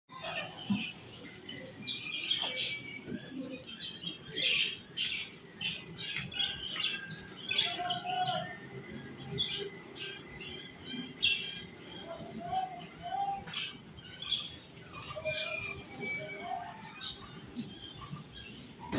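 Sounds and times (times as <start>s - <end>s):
budgerigars chirping: 0.2s - 8.4s.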